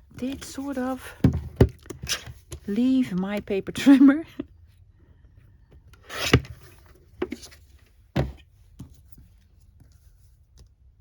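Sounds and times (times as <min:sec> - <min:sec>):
object set down thud: 0:08.2 - 0:08.9.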